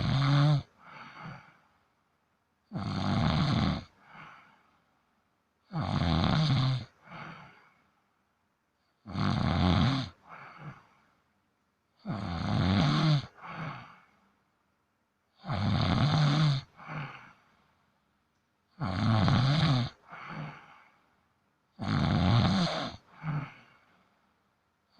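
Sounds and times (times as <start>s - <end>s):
cat snoring: 0.0s - 1.5s, 2.7s - 4.4s, 5.7s - 7.6s, 9.0s - 10.8s, 12.0s - 14.0s, 15.4s - 17.3s, 18.8s - 20.8s, 21.8s - 23.8s.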